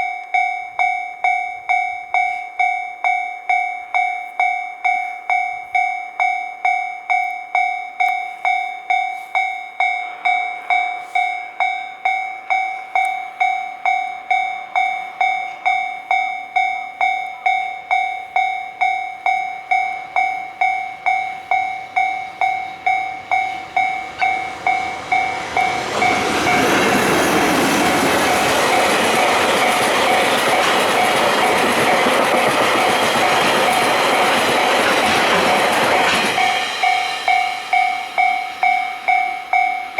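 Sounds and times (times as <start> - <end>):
level crossing warning bell: 0.0 - 39.9
freight train passing: 8.3 - 39.9.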